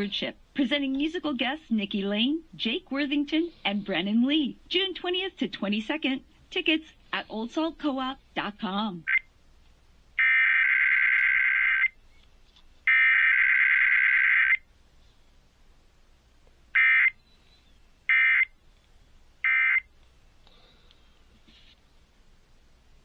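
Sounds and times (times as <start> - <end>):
buzzy warbling data tones: 10.2 - 12.0.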